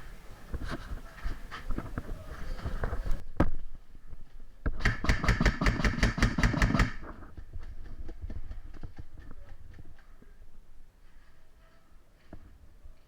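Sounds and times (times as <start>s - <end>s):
airsoft gun shots: 4.8s - 7.1s.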